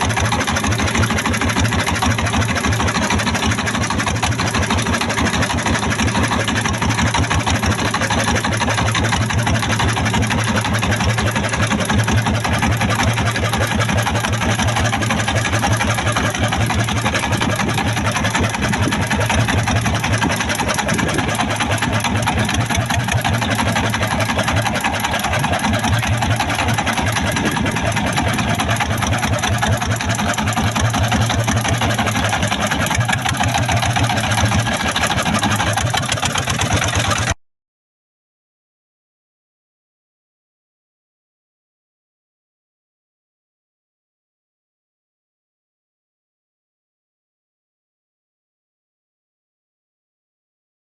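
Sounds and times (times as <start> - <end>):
boat engine chugging: 0.0 - 37.4.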